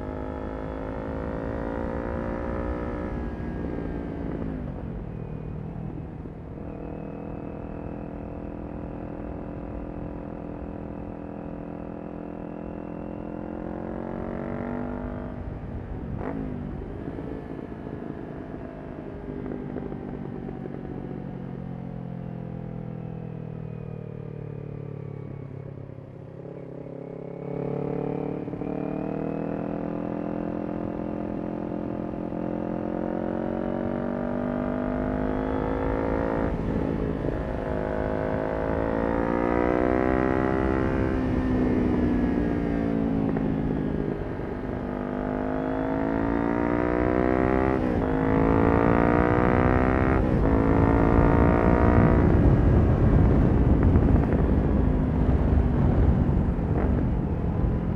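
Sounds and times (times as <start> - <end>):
motorcycle engine revving: 0.0 - 4.8, 26.4 - 57.9.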